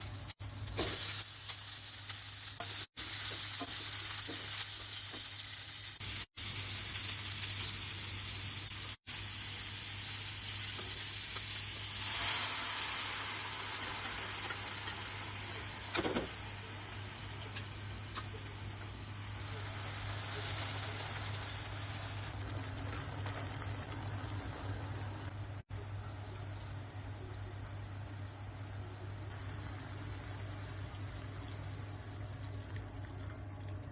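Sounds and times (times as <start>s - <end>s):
food sizzling in hot oil: 0.0s - 17.8s, 18.4s - 25.6s.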